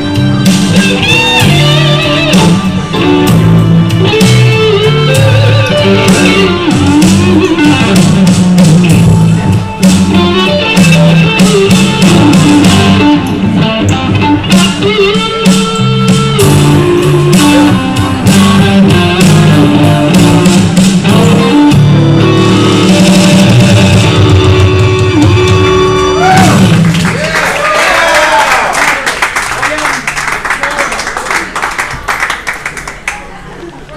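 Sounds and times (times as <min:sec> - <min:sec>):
electric guitar lead notes: 0:00.0 - 0:27.1
drums: 0:00.0 - 0:27.8
bass: 0:00.0 - 0:28.6.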